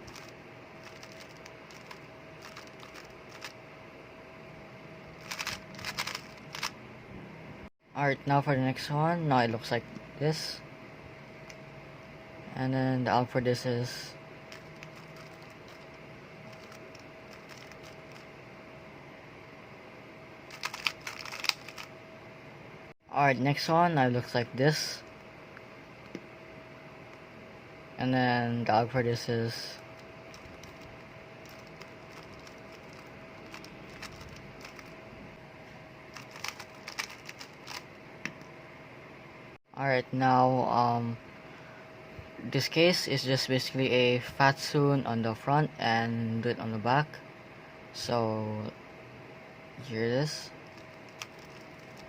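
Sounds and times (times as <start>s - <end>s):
puzzle cube plastic clicks: 0.0s - 3.5s, 5.2s - 6.7s, 16.5s - 18.2s, 20.5s - 21.9s, 30.3s - 34.9s, 36.2s - 37.8s, 50.7s - 52.0s
low hum: 0.0s - 40.1s.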